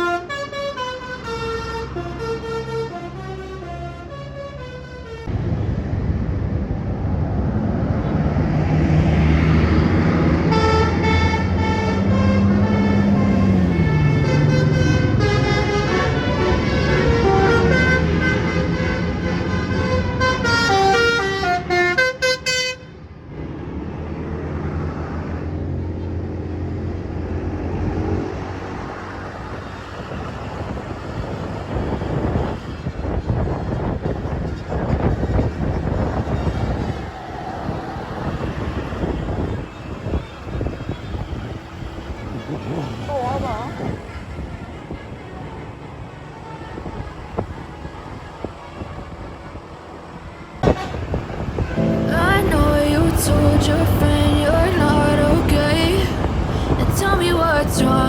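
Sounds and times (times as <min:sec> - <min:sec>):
musical bus horn melody: 0:00.0 - 0:05.3, 0:10.4 - 0:23.0, 0:50.6 - 0:58.0
low air horn blast: 0:00.0 - 0:05.4, 0:09.8 - 0:23.0, 0:50.6 - 0:58.0
bus engine droning: 0:00.0 - 0:58.0
road and traffic noise: 0:00.0 - 0:58.0.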